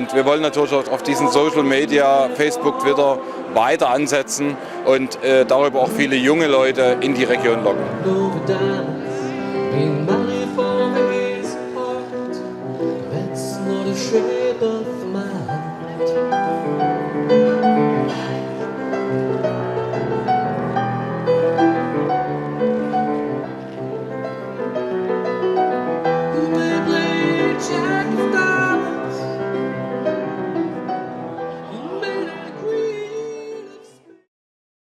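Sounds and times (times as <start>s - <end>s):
person singing: 0.0s - 18.8s, 26.1s - 34.3s
piano: 0.0s - 34.3s.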